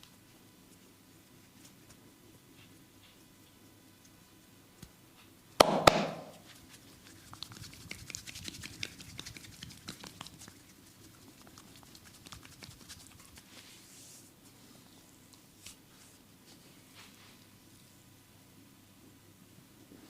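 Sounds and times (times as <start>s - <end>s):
hands slapping bare skin: 5.6s - 10.7s, 11.4s - 13.5s
quiet pats and clicks: 6.2s - 10.7s.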